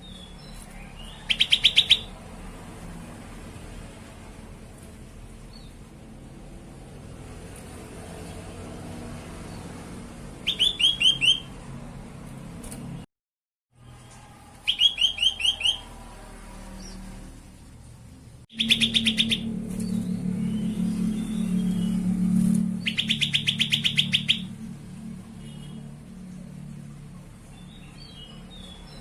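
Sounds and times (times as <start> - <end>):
bulbul singing whistled notes: 1.1 - 2.1, 10.5 - 11.5, 14.6 - 15.8, 18.5 - 22.0, 22.8 - 24.5.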